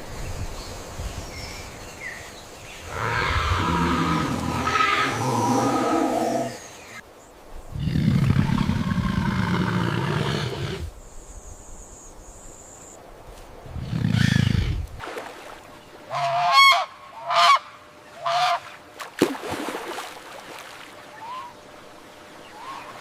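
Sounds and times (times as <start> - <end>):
bird calling: 21.0 - 21.7, 22.4 - 23.0.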